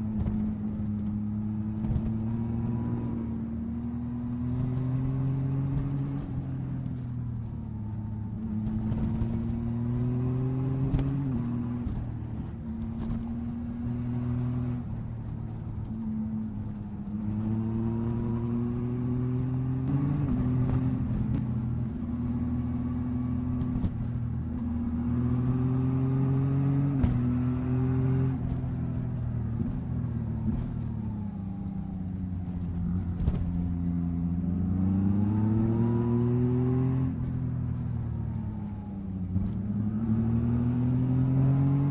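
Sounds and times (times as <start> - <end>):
motorcycle engine revving: 17.2 - 30.8, 32.0 - 41.9.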